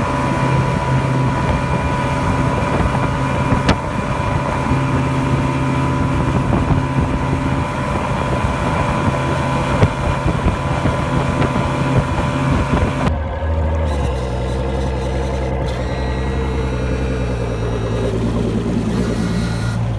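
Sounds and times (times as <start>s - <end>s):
wind buffeting microphone: 0.0s - 13.9s
outboard motor running: 0.0s - 19.9s.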